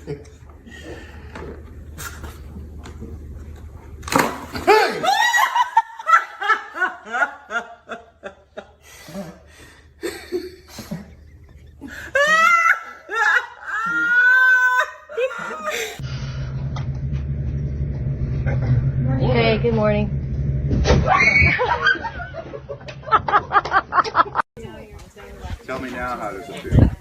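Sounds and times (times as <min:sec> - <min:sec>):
steady low hum: 0:00.0 - 0:05.2, 0:05.8 - 0:13.8, 0:15.1 - 0:25.6
people laughing hard: 0:04.6 - 0:16.0, 0:21.2 - 0:24.4.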